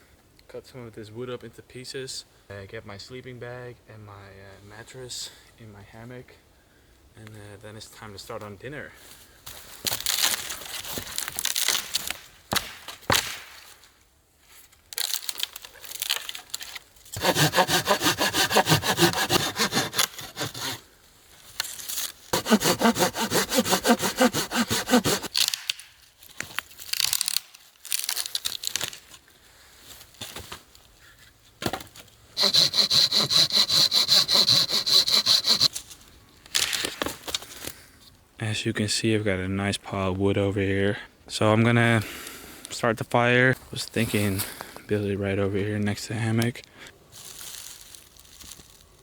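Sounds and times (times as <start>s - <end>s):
hand saw cutting wood: 17.2s - 20.8s, 22.3s - 25.4s, 32.4s - 35.7s.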